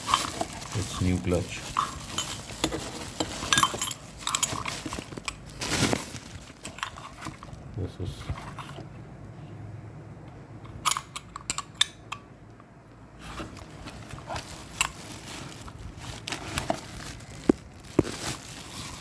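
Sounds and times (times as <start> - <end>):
small parts clicking and clinking: 0.0 - 5.4
low steady hum: 0.0 - 19.0.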